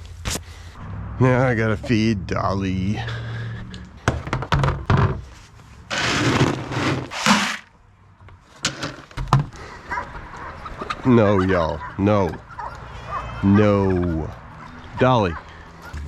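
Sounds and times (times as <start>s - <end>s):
knocks and thunks: 4.0s - 5.3s, 9.2s - 9.6s.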